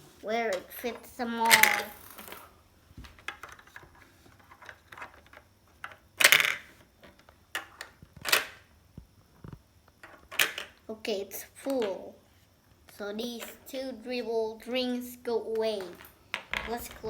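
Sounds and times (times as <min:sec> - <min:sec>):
plastic toys clacking: 0:00.5 - 0:02.5, 0:03.2 - 0:08.6, 0:10.0 - 0:10.8, 0:15.5 - 0:17.0.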